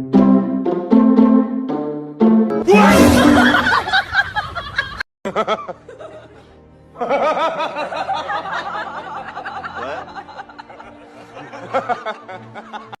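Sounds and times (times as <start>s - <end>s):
people laughing: 2.7s - 13.0s.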